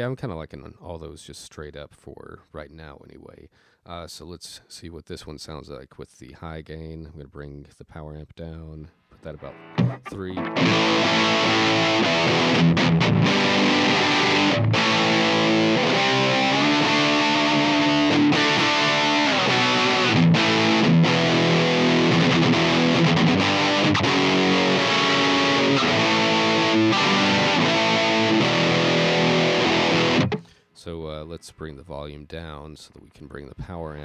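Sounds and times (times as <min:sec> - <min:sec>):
distorted electric guitar: 0:09.1 - 0:30.6.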